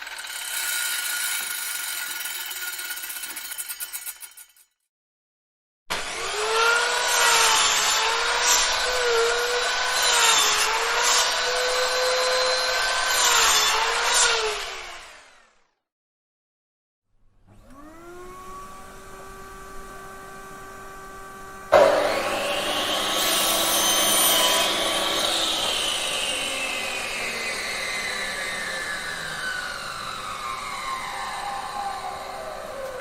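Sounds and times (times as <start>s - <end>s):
grinder disc grinding metal: 0.0s - 4.6s, 21.7s - 31.4s
angle grinder motor whine: 17.5s - 33.0s.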